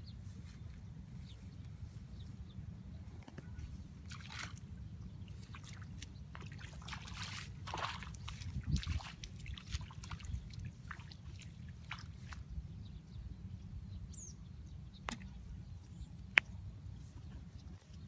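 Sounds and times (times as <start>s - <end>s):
water splashing and dripping: 4.0s - 4.6s, 5.3s - 12.4s.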